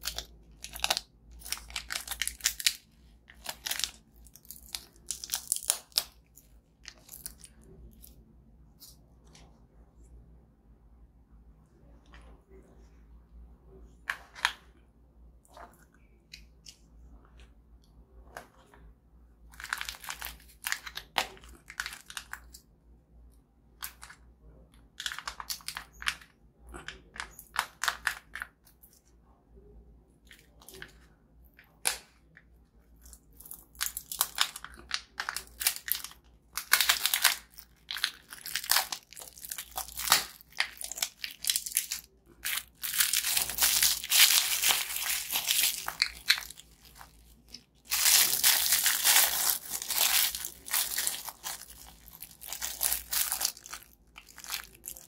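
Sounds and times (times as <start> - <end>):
plastic wrappers crinkling and tearing: 0.0 - 7.7, 19.5 - 22.6, 33.0 - 55.0.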